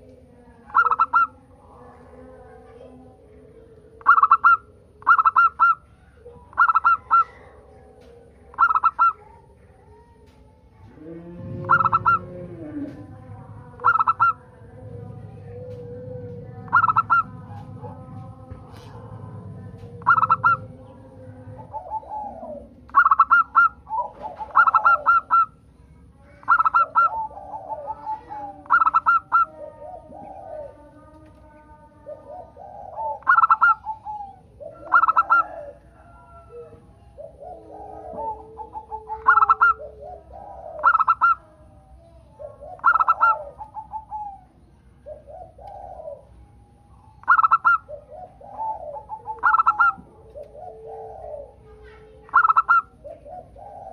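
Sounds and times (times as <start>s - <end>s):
low warbling bird calls: 0.0s - 2.0s, 3.9s - 53.9s
doves cooing: 0.0s - 53.9s
low hum: 9.6s - 53.3s.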